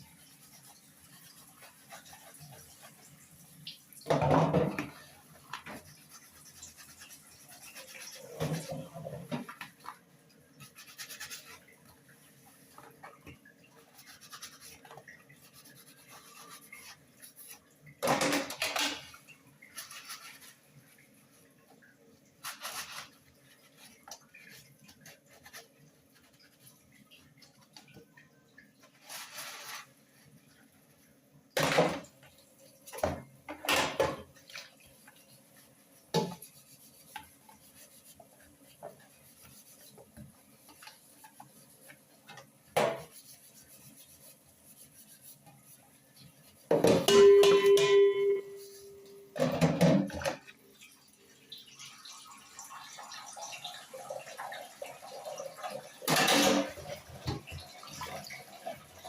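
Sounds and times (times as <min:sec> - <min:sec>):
pots and utensils clattering: 0:04.0 - 0:05.9, 0:08.0 - 0:09.9, 0:18.0 - 0:20.3, 0:31.6 - 0:32.2, 0:32.9 - 0:34.7, 0:46.7 - 0:50.5, 0:55.8 - 0:58.4
ringing metal clang: 0:47.1 - 0:48.6.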